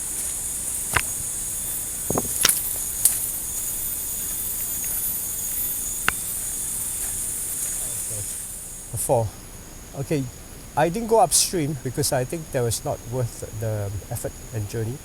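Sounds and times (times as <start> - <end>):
jungle insects droning: 0.0 - 15.0.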